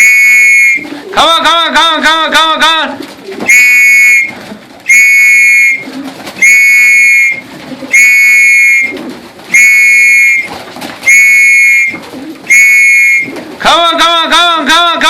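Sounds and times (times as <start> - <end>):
high-pitched pigeon call signal blasts: 0.0 - 1.1, 3.4 - 13.4.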